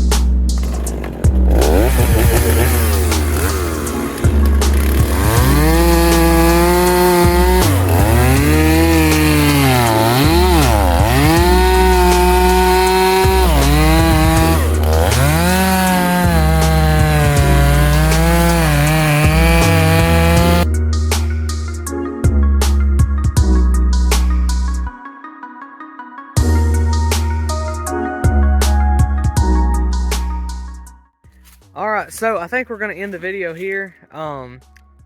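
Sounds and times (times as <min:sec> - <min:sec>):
chainsaw cutting wood: 0:00.6 - 0:20.6.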